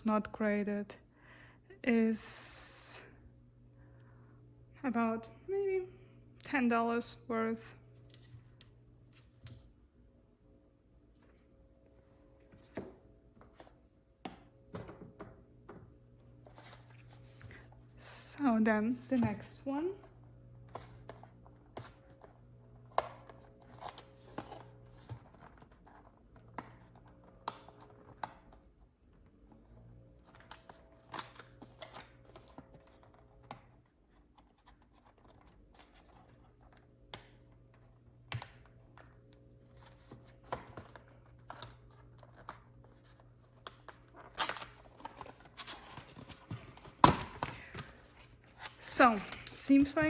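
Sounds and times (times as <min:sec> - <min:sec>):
faint steady hum: 0:00.0 - 0:50.0
packaging rustling and tearing: 0:40.9 - 0:50.0.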